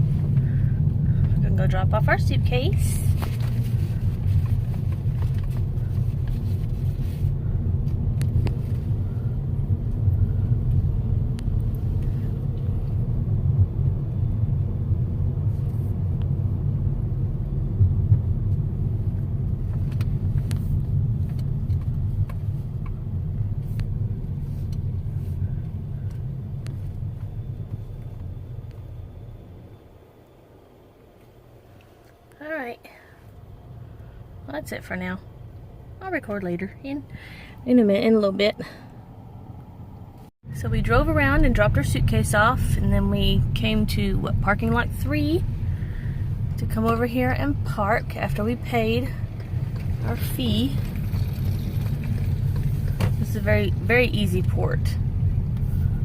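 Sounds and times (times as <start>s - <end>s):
car engine and tyres rumbling: 0.0s - 56.0s.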